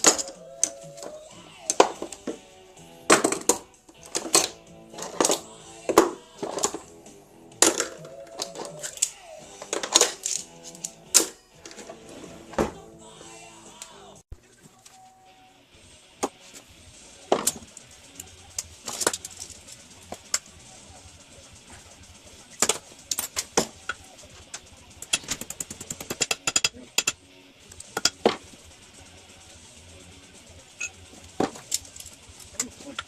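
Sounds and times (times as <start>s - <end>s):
welding arc sputtering and popping: 16.2s - 33.0s.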